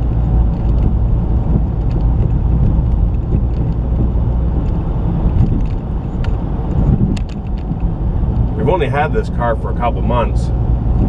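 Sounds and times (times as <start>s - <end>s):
road rumble inside car: 0.0s - 11.0s
faint knocks from car front: 0.6s - 7.9s.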